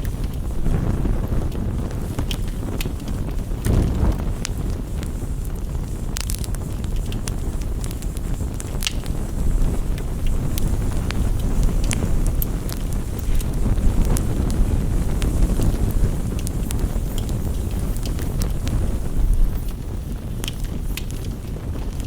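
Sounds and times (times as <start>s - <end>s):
campfire pops and snaps: 0.0s - 22.0s
low rumble: 3.6s - 5.2s.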